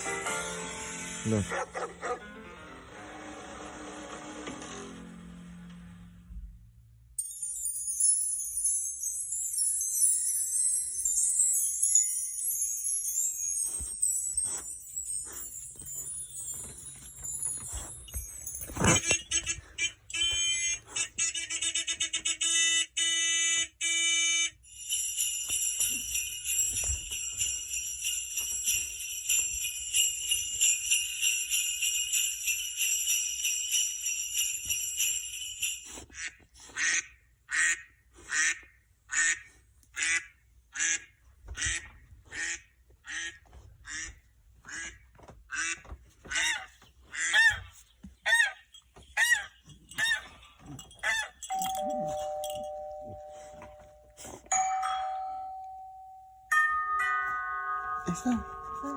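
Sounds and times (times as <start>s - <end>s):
bells jingling: 7.2s - 21.0s, 24.6s - 36.1s, 48.4s - 58.9s.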